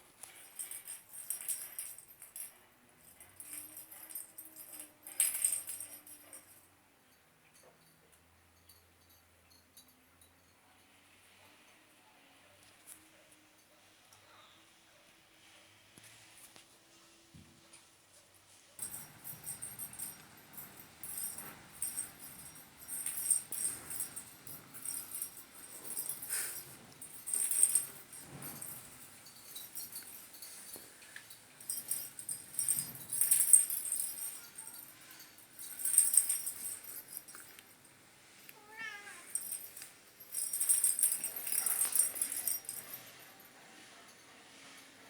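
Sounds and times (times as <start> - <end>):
jingle bell toy ball jingling: 0.3 - 6.7, 18.8 - 37.9, 38.7 - 43.5.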